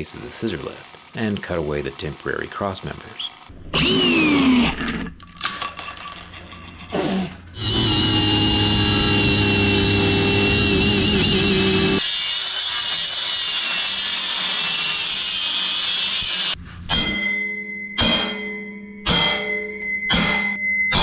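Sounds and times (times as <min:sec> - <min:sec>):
power tool cutting steel: 0:00.0 - 0:04.8, 0:07.6 - 0:16.6.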